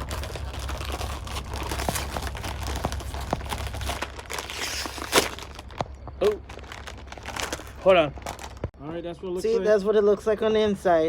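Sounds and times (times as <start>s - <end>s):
plastic bag crinkling: 0.0s - 8.8s.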